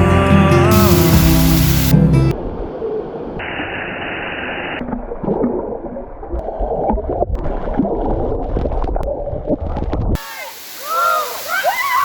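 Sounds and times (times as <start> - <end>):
high hiss: 0.7 - 2.0, 10.2 - 12.0
waterfall rushing and gurgling: 0.7 - 2.5, 10.2 - 12.0.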